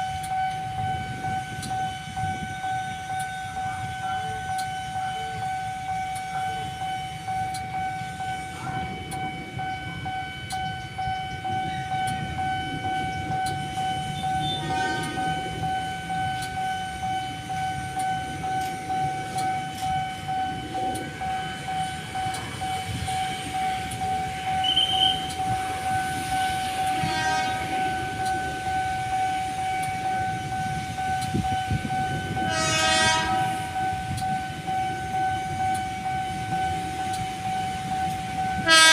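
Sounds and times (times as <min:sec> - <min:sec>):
electric train rumbling past: 0:00.0 - 0:38.9
level crossing alarm pulsing: 0:00.0 - 0:38.9
train horn: 0:14.0 - 0:15.8, 0:24.6 - 0:28.8, 0:32.2 - 0:34.2, 0:38.5 - 0:38.9.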